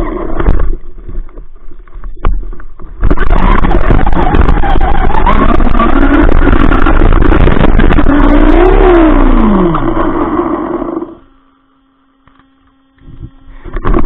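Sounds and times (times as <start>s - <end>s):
faint steady hum: 0.0s - 14.0s
rc car motor whining: 3.0s - 11.3s.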